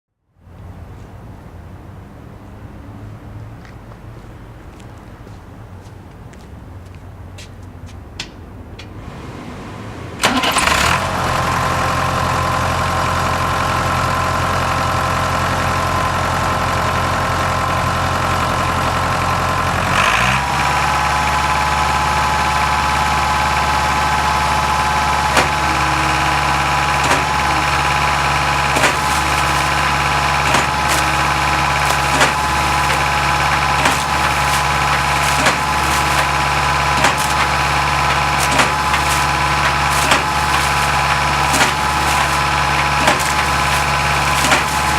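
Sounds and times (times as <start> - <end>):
pump engine running: 10.2 - 44.9
pump knocking: 23.9 - 44.9.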